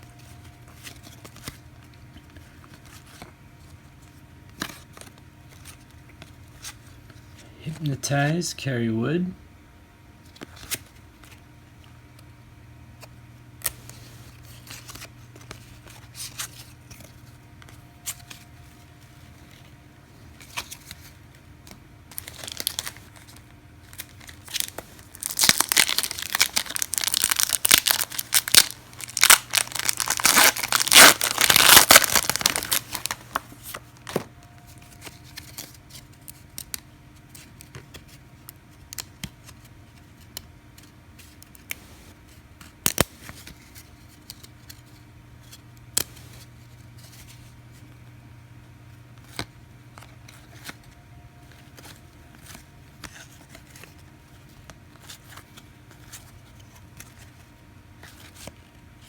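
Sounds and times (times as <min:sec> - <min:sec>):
wrapper tearing and crinkling: 0:22.1 - 0:34.1.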